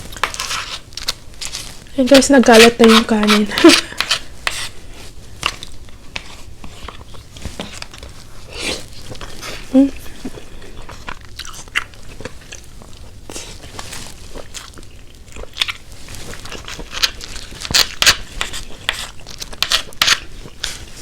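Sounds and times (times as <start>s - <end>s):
person chewing food: 3.5s - 21.0s.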